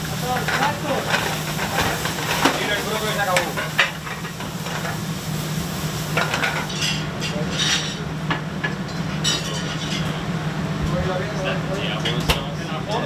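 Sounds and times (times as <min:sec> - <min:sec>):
seafood sizzling in a pan: 0:00.0 - 0:06.7
utensil scraping a pan: 0:00.0 - 0:06.7.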